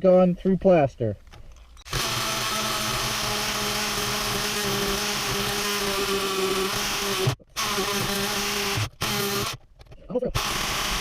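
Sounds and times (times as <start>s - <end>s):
rotary tool grinding metal: 1.7s - 11.0s.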